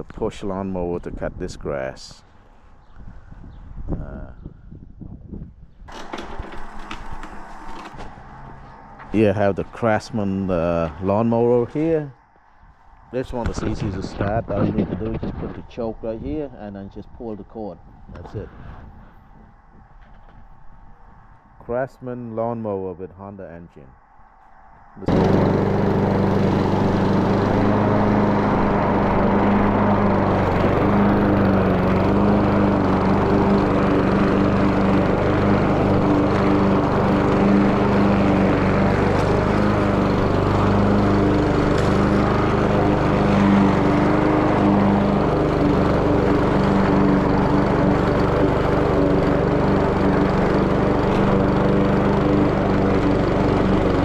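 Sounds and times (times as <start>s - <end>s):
lawn mower engine running: 5.9s - 9.5s, 25.0s - 54.0s.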